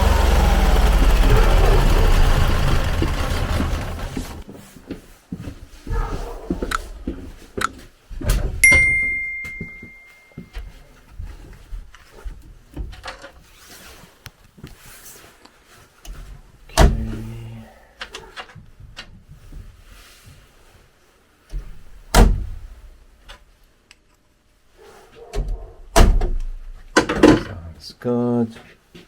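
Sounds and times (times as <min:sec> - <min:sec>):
sharp metallic clang: 0:08.6 - 0:10.3.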